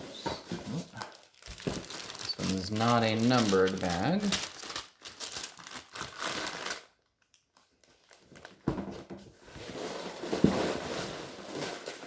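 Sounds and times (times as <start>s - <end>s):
plastic bags crinkling: 0.8s - 8.6s.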